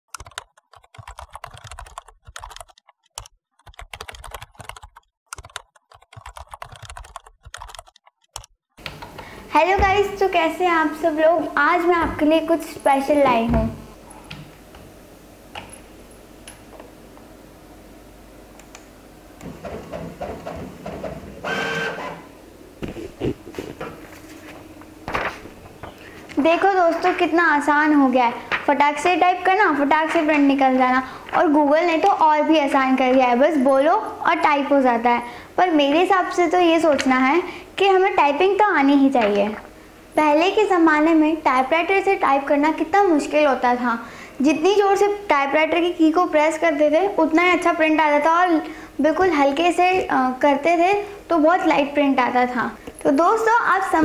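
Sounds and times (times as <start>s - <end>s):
printer clicking and whirring: 20.2s - 22.3s.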